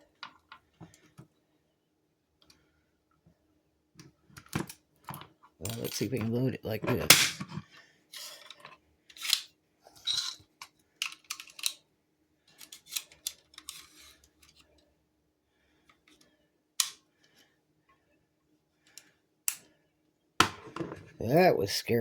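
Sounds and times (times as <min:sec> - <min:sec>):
staple gun clicks and rattles: 0:10.2 - 0:11.8, 0:16.8 - 0:17.0.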